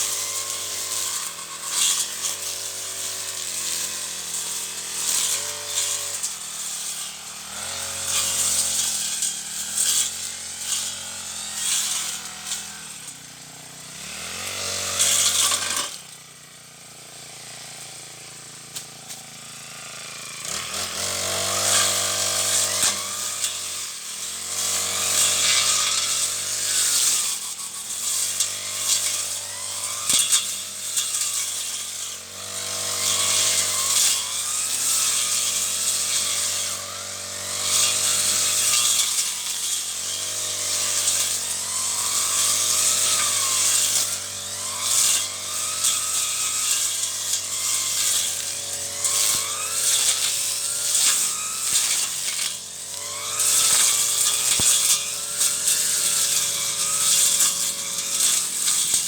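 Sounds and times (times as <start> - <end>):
brush cutter engine revving: 0.0 - 59.0.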